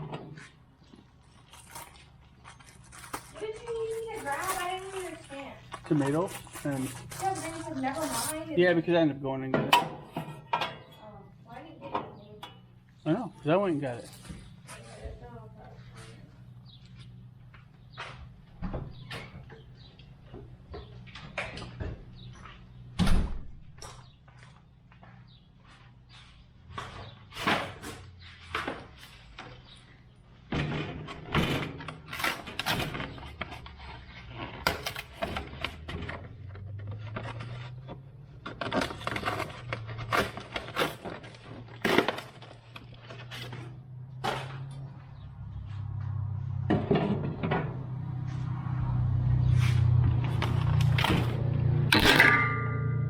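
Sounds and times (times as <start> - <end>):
grill parts knocking and clattering: 9.4 - 12.8, 30.5 - 44.9, 45.8 - 48.1, 49.8 - 53.0
low hum: 48.6 - 53.0.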